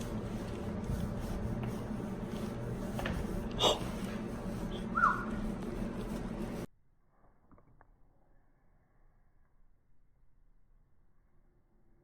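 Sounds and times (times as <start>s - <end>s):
steady low hum: 0.0s - 6.7s.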